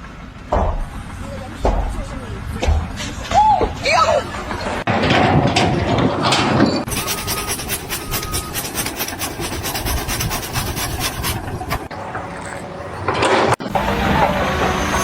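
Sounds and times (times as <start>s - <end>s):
rhythmic scraping strokes: 6.8s - 11.9s.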